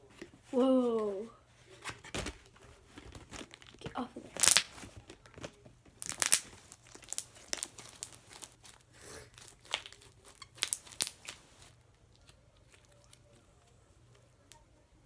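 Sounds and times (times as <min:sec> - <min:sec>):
slime squishing and crackling: 0:03.2 - 0:13.5.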